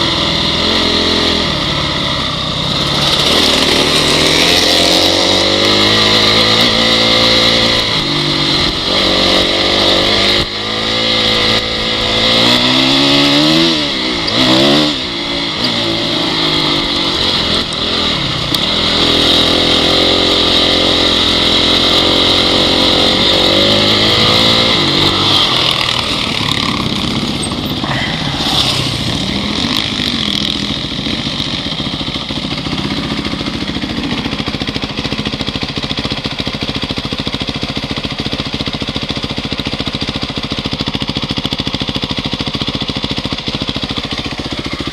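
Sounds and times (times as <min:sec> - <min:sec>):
dirt bike engine revving: 0:00.0 - 0:44.9.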